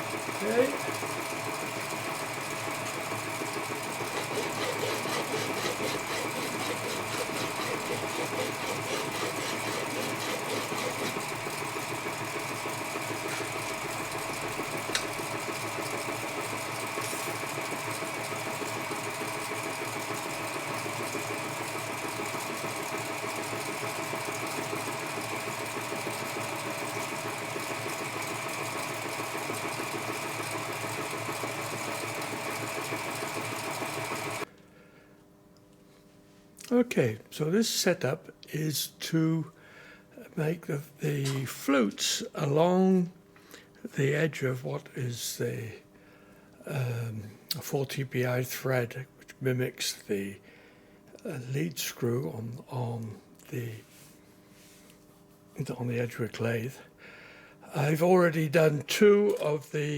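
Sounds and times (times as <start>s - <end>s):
lathe humming: 0.0s - 34.5s
rhythmic ticking from cutting: 3.7s - 12.2s.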